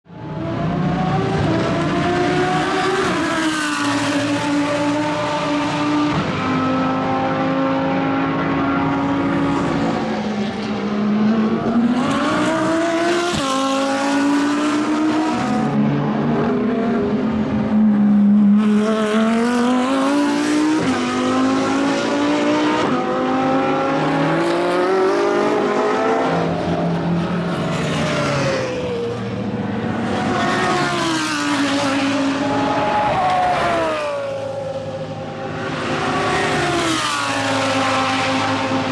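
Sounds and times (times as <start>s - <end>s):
race car engine accelerating and braking: 0.1s - 38.9s.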